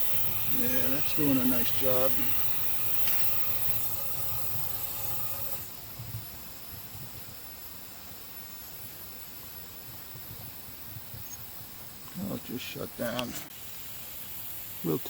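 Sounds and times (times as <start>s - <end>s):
gas burner rushing: 0.0s - 5.9s.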